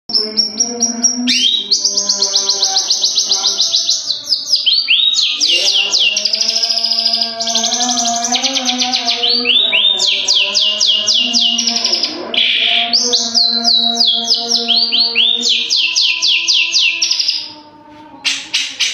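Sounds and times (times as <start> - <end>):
bird singing whistled notes: 1.3 - 2.0, 2.9 - 6.4.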